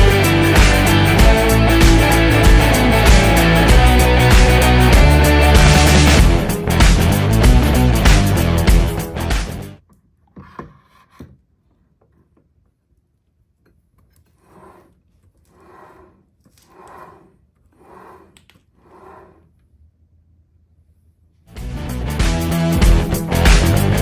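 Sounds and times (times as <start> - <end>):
background music: 0.0 - 9.8, 21.6 - 24.0
rubbing strokes by hand: 14.3 - 19.5.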